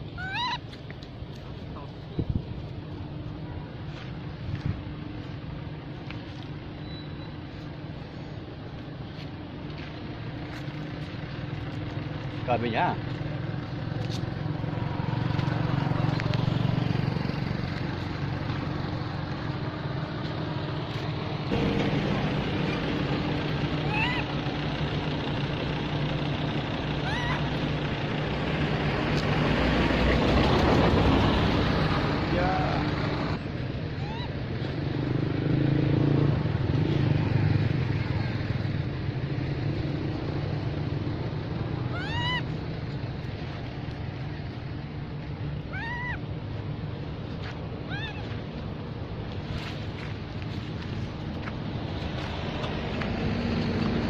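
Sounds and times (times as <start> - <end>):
baby monkey crying: 0.1 - 0.7, 23.8 - 24.3, 27.0 - 27.6, 33.9 - 34.4, 41.8 - 42.6, 45.7 - 46.2, 47.8 - 48.3
motor rumbling: 13.0 - 30.4.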